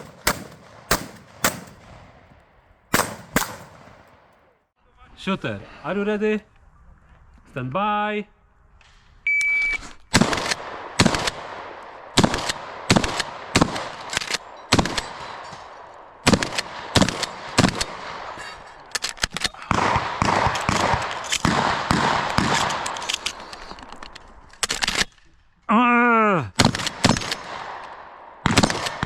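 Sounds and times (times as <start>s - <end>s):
shotgun shots echoing: 0.0s - 4.5s.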